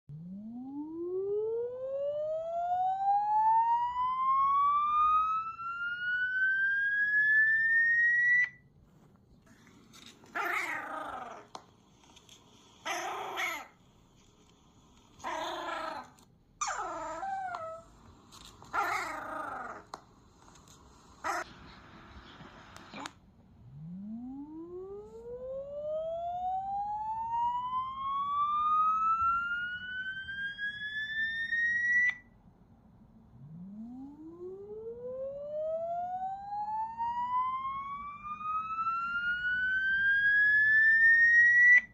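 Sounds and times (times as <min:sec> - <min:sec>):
dog howling: 0:10.4 - 0:11.5, 0:15.2 - 0:17.9, 0:18.7 - 0:19.8
rising electronic tone: 0:23.6 - 0:25.4.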